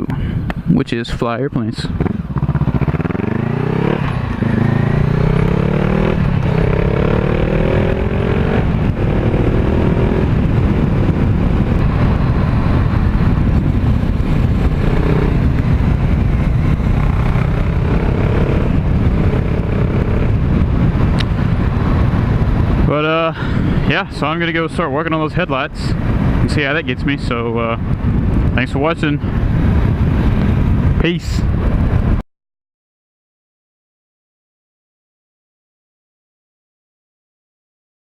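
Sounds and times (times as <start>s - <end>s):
wind rush: 0.0s - 32.2s
motorcycle engine accelerating: 1.8s - 23.0s.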